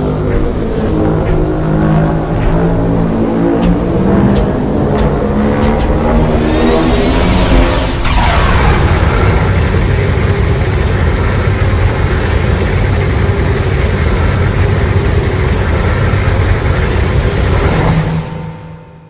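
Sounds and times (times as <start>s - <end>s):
monster roar with deep rumble: 0.0s - 12.8s.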